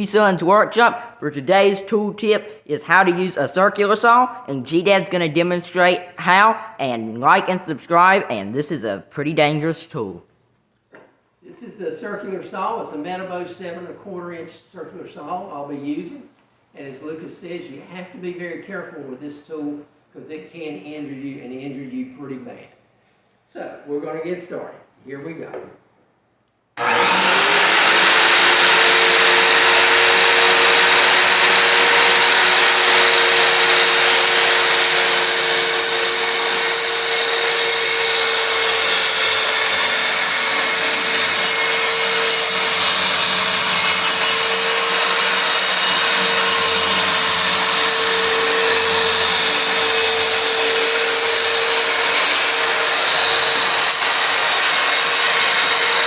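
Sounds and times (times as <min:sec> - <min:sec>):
circular saw whining: 0:26.8 - 0:56.0.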